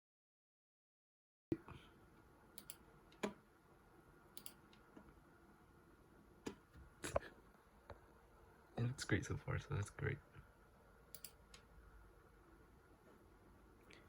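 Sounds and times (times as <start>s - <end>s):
faint steady hum: 1.5s - 14.0s
sharp clicks: 11.1s - 11.7s.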